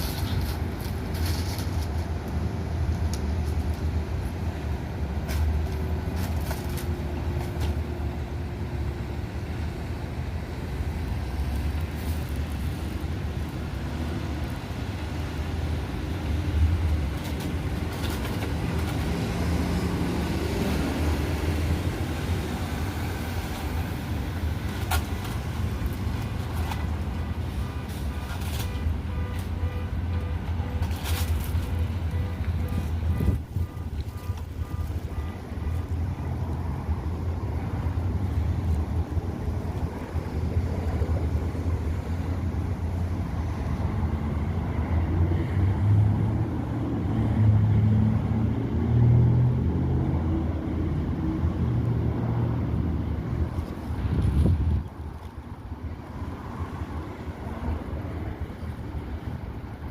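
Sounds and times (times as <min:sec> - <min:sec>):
road traffic rumble: 0:00.0 - 0:59.9.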